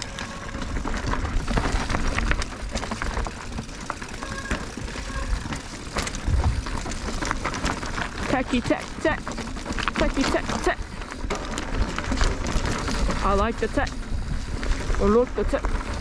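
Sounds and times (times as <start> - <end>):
bike chain and frame clattering: 0.0 - 16.0
bike tyres rolling over rock: 0.0 - 16.0
steady low rumble: 6.1 - 16.0.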